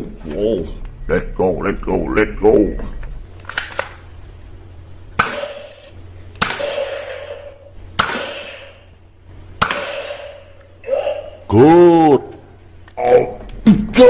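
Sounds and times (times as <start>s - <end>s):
toy gun shots: 5.2s - 8.9s, 9.6s - 10.6s.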